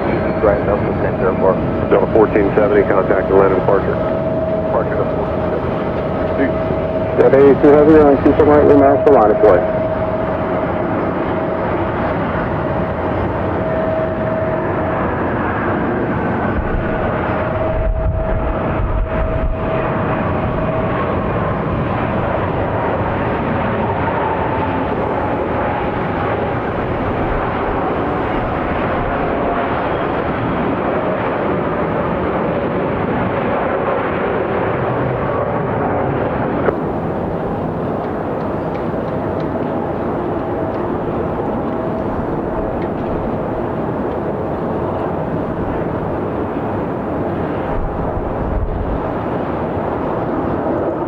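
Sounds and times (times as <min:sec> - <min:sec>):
deep rumble: 0:00.0 - 0:23.4
jet engines roaring: 0:00.0 - 0:51.0.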